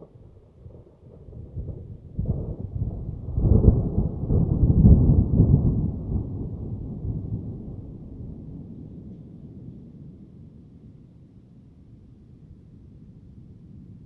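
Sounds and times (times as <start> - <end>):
thunder crack and rumble: 0.0 - 11.0.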